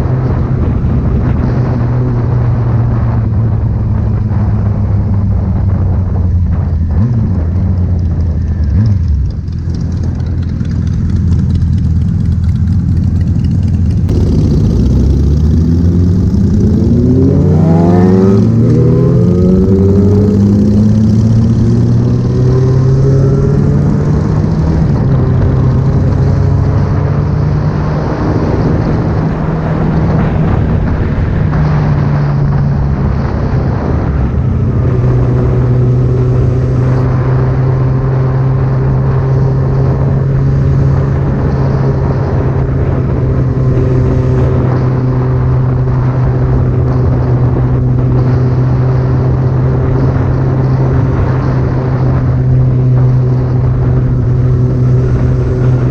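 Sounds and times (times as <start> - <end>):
loud vehicle engine running: 0.0 - 55.9.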